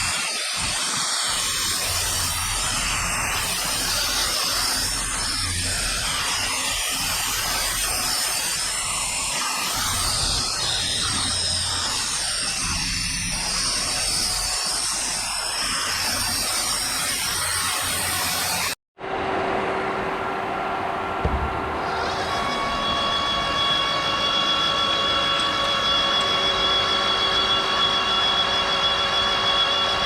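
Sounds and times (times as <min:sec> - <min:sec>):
machine hum with high whine: 0:19.0 - 0:30.0
milling machine cutting metal: 0:21.2 - 0:30.0.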